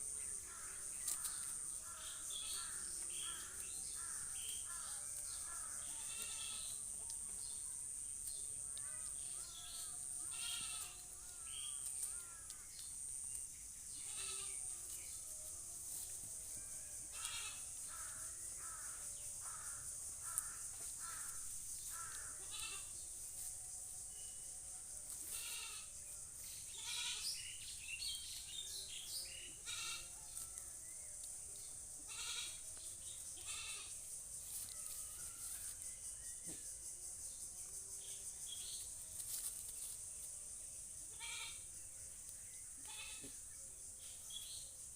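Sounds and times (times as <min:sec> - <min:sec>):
goat bleating: 0:05.9 - 0:06.7, 0:10.2 - 0:11.0, 0:14.0 - 0:14.6, 0:17.1 - 0:17.6, 0:22.4 - 0:22.9, 0:25.3 - 0:25.9, 0:26.8 - 0:27.2, 0:29.6 - 0:30.1, 0:32.1 - 0:32.6, 0:33.4 - 0:33.9, 0:41.1 - 0:41.6, 0:42.8 - 0:43.3.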